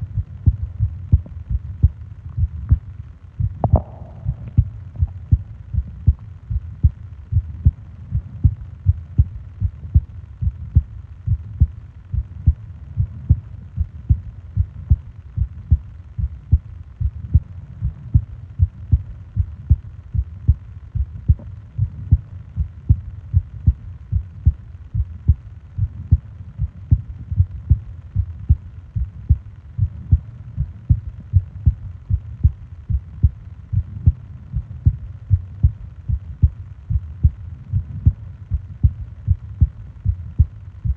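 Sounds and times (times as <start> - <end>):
heartbeat thumps: 0.0 - 40.9.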